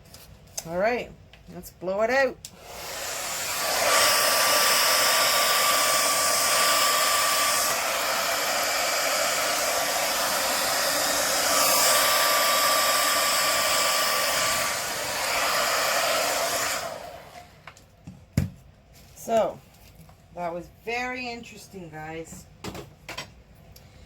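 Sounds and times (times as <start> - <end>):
hair dryer blowing: 2.5 - 17.8.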